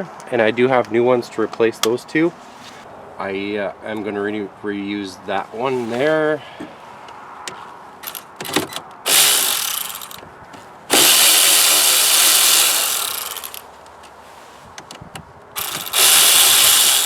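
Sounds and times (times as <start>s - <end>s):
power tool spinning: 8.0s - 10.2s, 10.9s - 13.6s, 15.6s - 17.0s.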